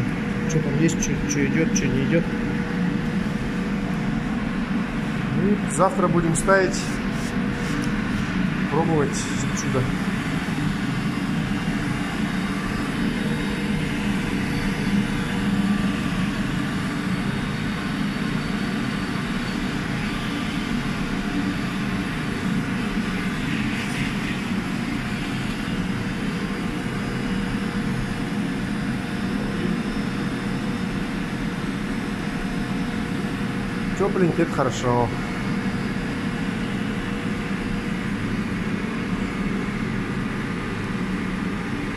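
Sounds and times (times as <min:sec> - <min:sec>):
hot-air blower whooshing: 0:00.0 - 0:30.7.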